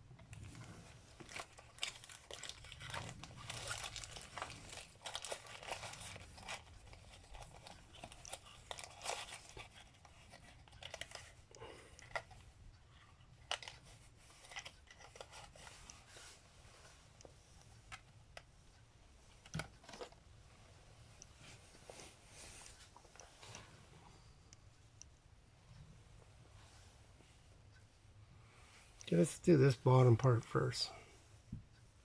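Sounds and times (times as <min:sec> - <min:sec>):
packaging rustling: 0:00.5 - 0:12.4, 0:14.4 - 0:16.2.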